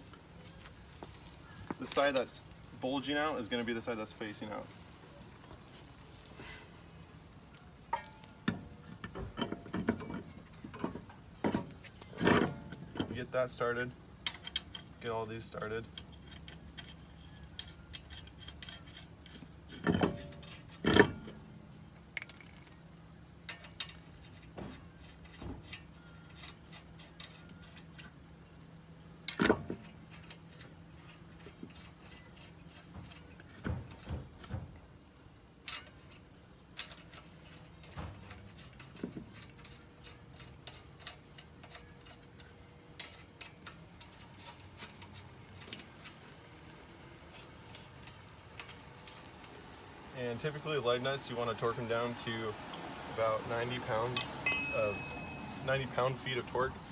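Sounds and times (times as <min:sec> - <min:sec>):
metal clanks: 0:07.5 - 0:13.4, 0:14.2 - 0:22.7, 0:35.6 - 0:56.9
small metallic clicks: 0:14.2 - 0:28.2, 0:35.6 - 0:56.9.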